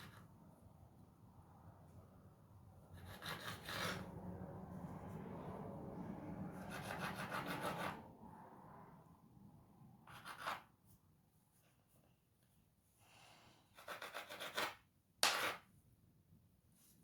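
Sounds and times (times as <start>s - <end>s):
knife scraping through dough: 3.0s - 4.1s, 13.6s - 15.6s.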